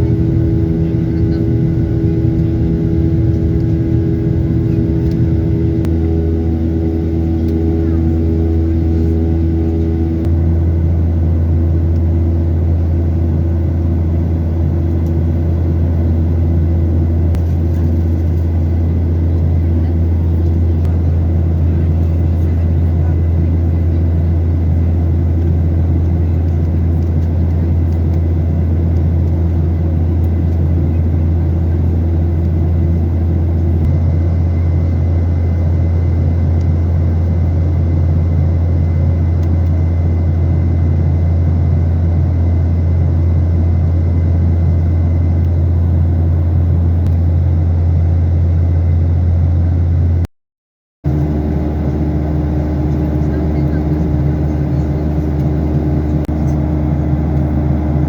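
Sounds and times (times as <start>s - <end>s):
airliner engines droning: 0.0s - 50.3s, 51.1s - 58.0s.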